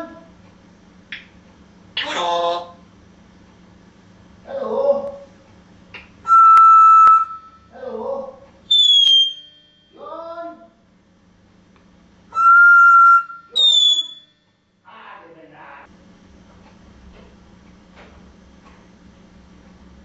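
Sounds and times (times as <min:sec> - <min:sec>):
parrot voice-like calls: 0:02.0 - 0:02.8, 0:12.4 - 0:14.2
parrot whistling: 0:06.3 - 0:07.7, 0:08.7 - 0:09.9, 0:12.3 - 0:14.3.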